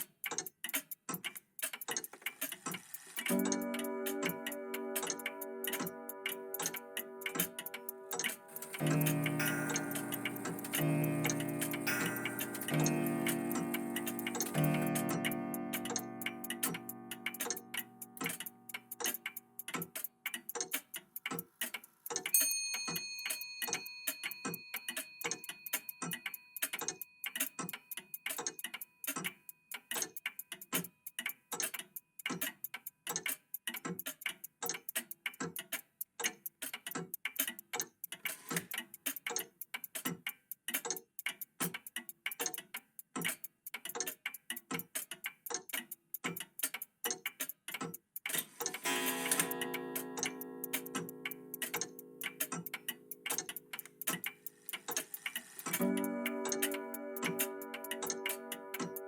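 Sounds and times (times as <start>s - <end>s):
mechanical clocks ticking: 0.0s - 59.0s
clock chime: 3.3s - 18.5s, 22.4s - 26.3s, 48.8s - 53.2s, 55.4s - 59.0s.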